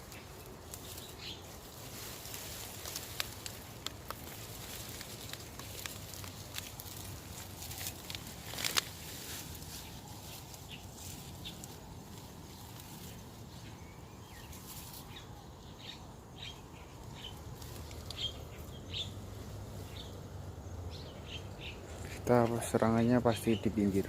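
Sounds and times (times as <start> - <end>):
bird chirps: 13.1 - 19.2.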